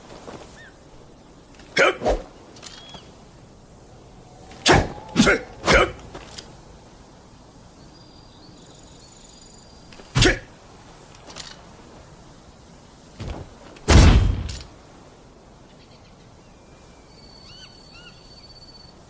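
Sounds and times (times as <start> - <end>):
spear strokes: 1.6 - 3.0, 4.5 - 6.6.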